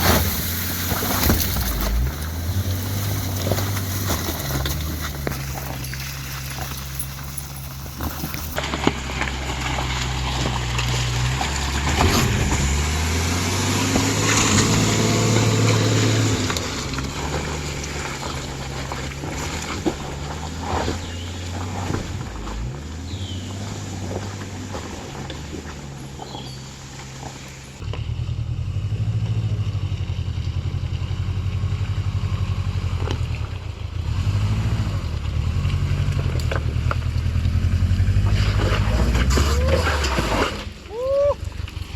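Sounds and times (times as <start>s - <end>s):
knocks from rough ground: 0.0s - 28.2s
car engine under load: 0.0s - 41.9s.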